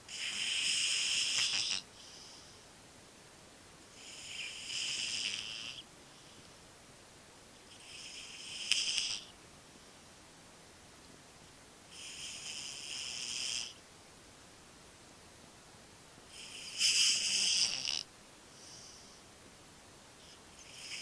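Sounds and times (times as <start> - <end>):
cat snoring: 0.1 - 2.6, 3.9 - 6.4, 7.7 - 9.4, 11.9 - 13.8, 16.3 - 19.2, 20.2 - 21.0.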